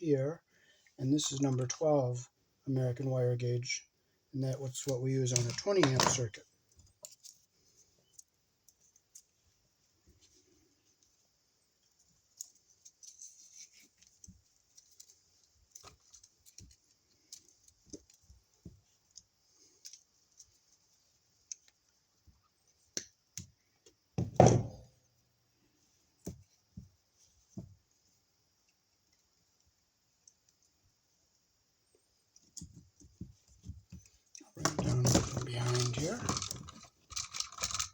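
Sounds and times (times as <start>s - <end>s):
cable and tools clicking: 4.8s - 7.5s, 33.9s - 37.9s.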